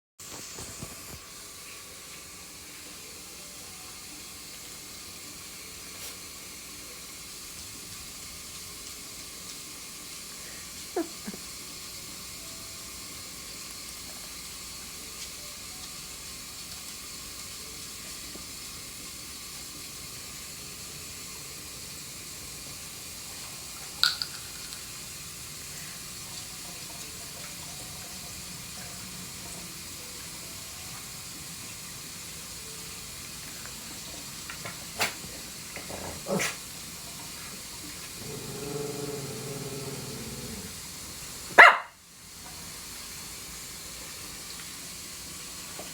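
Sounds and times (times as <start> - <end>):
tap water running into sink: 21.9 - 38.2, 39.8 - 45.9.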